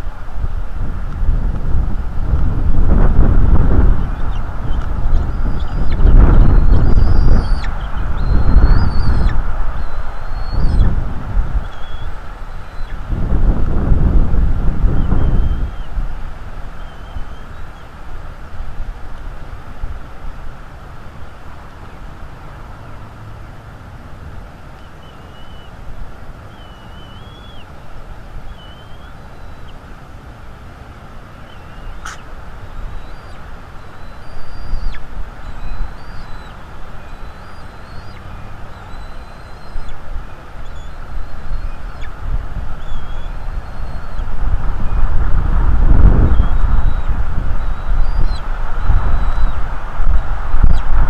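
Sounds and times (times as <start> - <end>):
wind buffeting microphone: 0.0 - 20.6, 31.0 - 51.0.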